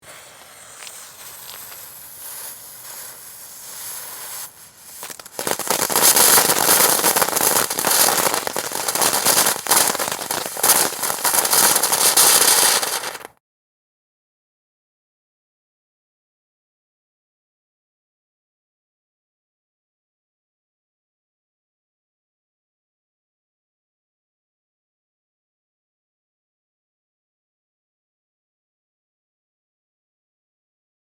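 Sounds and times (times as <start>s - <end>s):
firework fountain crackling: 0.0s - 13.4s.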